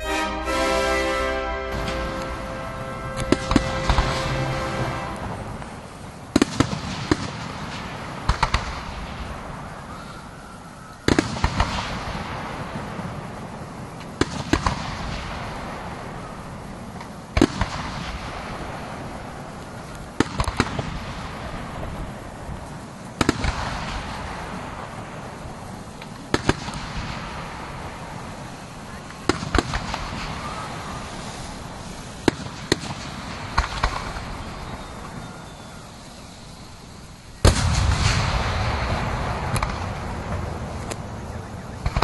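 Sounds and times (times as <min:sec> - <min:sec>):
orchestral music: 0:00.0 - 0:06.0
firework shells bursting: 0:00.0 - 0:42.0
fireworks crackling: 0:00.0 - 0:42.0.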